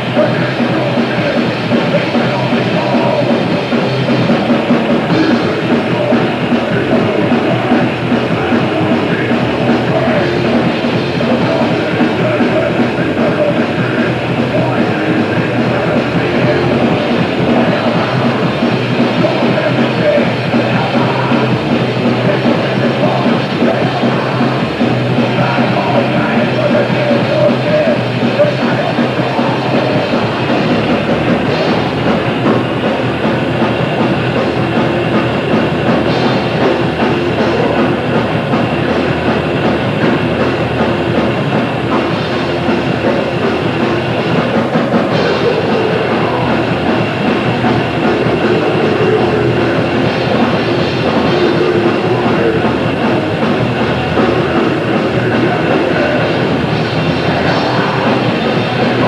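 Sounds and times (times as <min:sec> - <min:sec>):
bass guitar: 0:00.0 - 0:59.0
distorted guitars: 0:00.0 - 0:59.0
drums: 0:00.0 - 0:59.0.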